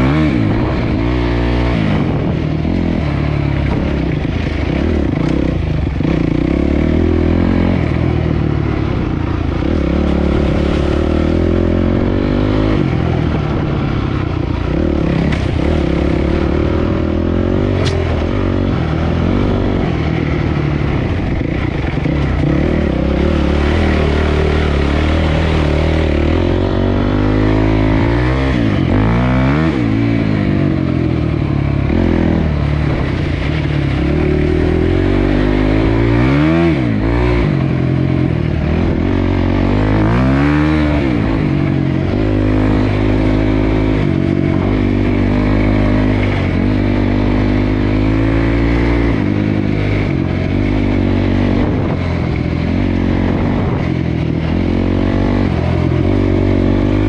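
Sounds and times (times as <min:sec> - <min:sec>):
dirt bike engine revving: 0:00.0 - 0:57.0
sharp click: 0:17.7 - 0:18.2.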